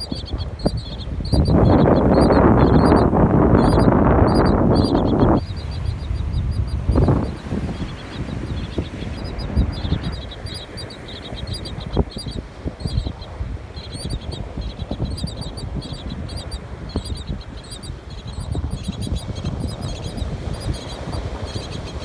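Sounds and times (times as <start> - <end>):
bird chirping: 0.0 - 22.0.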